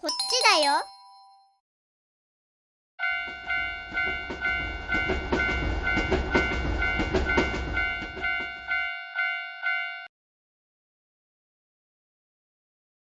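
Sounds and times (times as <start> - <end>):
railroad crossing bell ringing: 0.0 - 1.4, 3.0 - 10.1
train rumbling and clattering wheels: 3.1 - 9.8.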